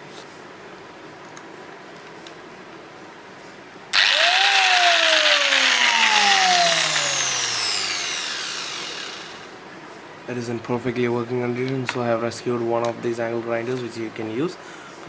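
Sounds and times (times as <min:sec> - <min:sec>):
angle grinder motor whining: 0:04.0 - 0:09.6.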